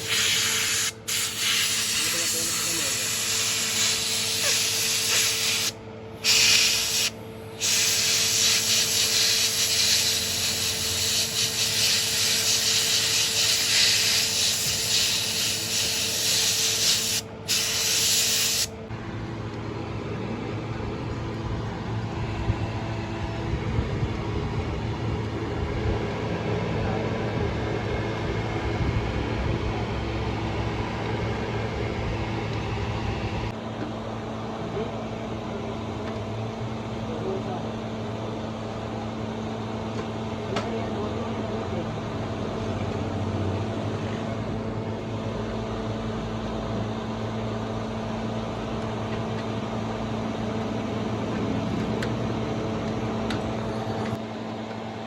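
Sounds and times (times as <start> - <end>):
pressurised spray hissing: 0.0 - 18.7
steady machine hum: 0.0 - 55.0.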